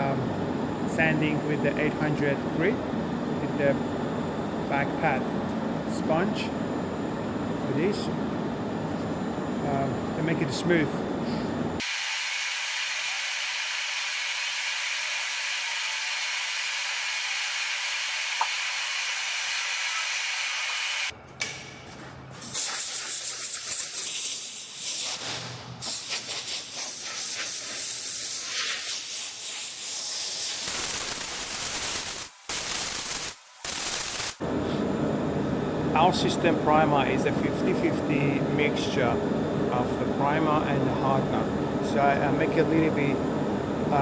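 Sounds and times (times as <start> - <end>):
low hums: 0.0 - 11.8, 34.4 - 44.0
compressed air hissing: 22.4 - 34.9.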